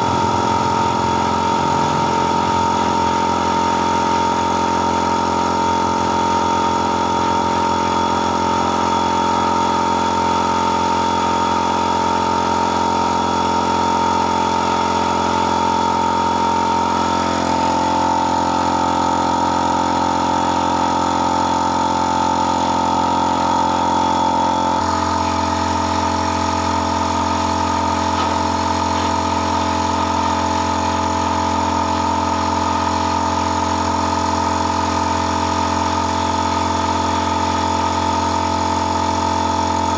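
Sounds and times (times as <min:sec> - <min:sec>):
motor humming: 0:00.0 - 0:06.7, 0:11.9 - 0:34.8.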